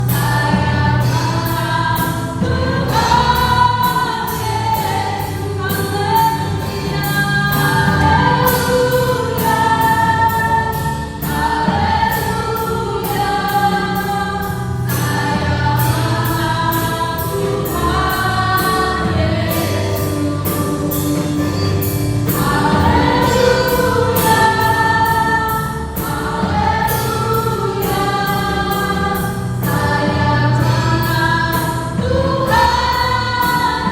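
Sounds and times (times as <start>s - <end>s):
choir singing worship song: 0.0s - 33.9s
instrumental accompaniment with beat: 0.0s - 33.9s.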